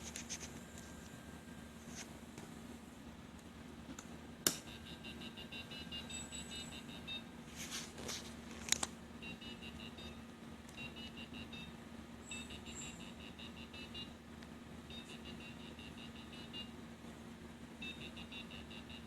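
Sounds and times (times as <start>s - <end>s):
buzzer short high beeps: 4.7s - 7.3s, 9.2s - 10.2s, 10.8s - 11.7s, 12.3s - 14.1s, 14.9s - 16.7s, 17.8s - 19.0s.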